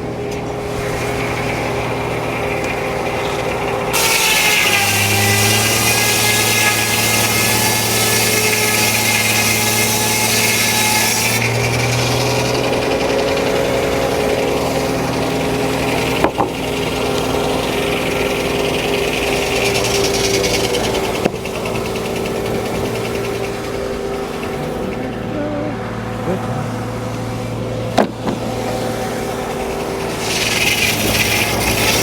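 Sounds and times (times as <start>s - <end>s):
circular saw blade cutting log: 0.0s - 32.0s
sawmill drive hum: 0.0s - 32.0s.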